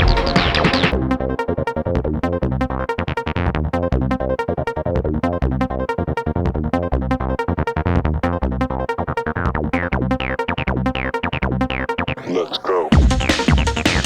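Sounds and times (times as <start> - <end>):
electronic music with fast beat: 0.0 - 14.0.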